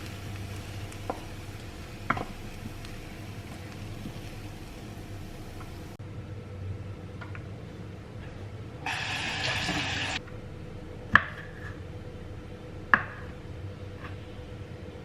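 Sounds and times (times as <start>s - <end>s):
steady low hum: 0.0s - 15.0s
running water rush: 8.9s - 10.2s.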